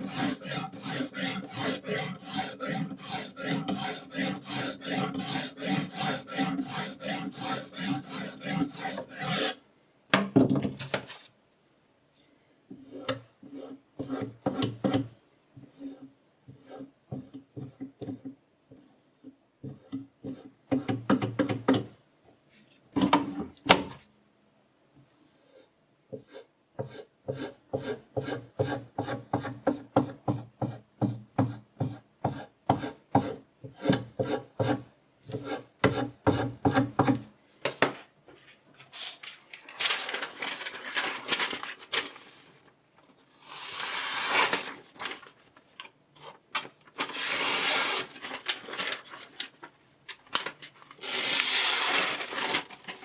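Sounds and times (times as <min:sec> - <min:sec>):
knife blade rubbing strokes: 0:00.0 - 0:09.6.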